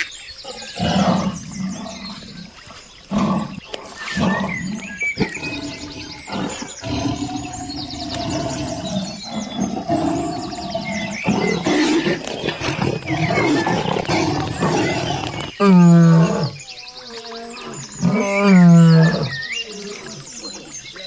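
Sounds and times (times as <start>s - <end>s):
birds chirping: 0.0s - 21.0s
large animal deep calls: 0.4s - 16.6s.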